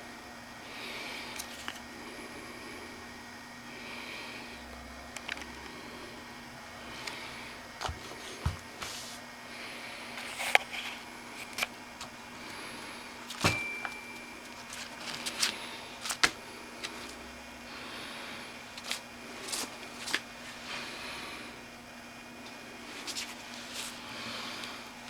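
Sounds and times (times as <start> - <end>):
steady low hum: 0.0 - 25.0
sharp ringing metal clank: 13.4 - 14.3.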